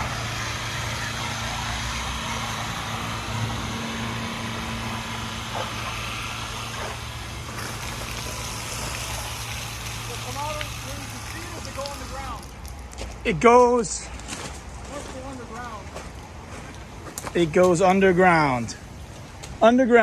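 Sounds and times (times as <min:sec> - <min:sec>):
spraying water hiss: 0:00.0 - 0:13.3, 0:17.1 - 0:19.5
pressure washer engine humming: 0:00.0 - 0:19.8.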